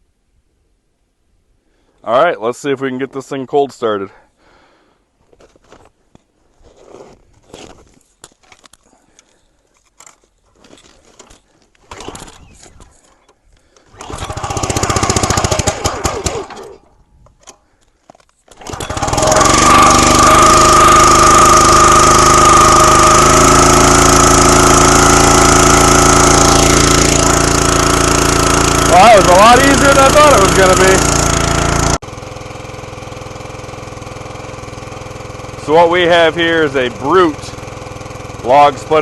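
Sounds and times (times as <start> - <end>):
small gas engine running: 11.9 - 17.0, 18.5 - 39.0.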